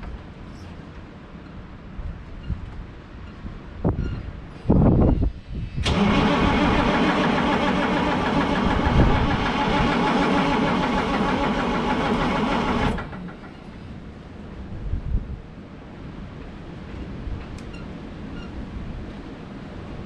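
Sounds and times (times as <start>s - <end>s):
starter cranking engine: 5.8s - 13.6s.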